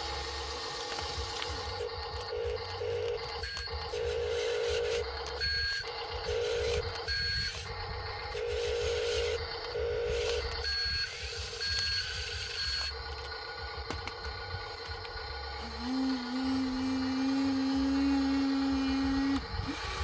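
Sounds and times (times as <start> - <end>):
electric motors whining: 0.0 - 20.0
electronic beeps: 1.6 - 7.8.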